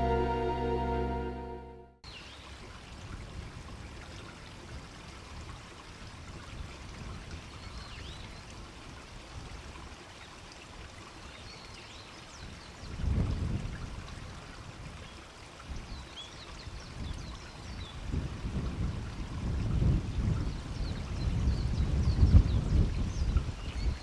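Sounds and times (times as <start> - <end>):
faint high chirps: 0.0 - 1.9.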